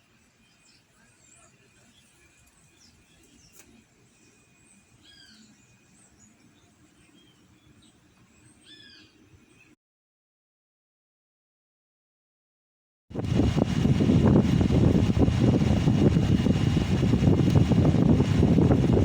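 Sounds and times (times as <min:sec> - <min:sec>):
faint birds chirping: 0:00.0 - 0:09.8
loud arching bird calls: 0:05.0 - 0:05.6, 0:08.4 - 0:09.2
low background rumble: 0:13.2 - 0:19.0.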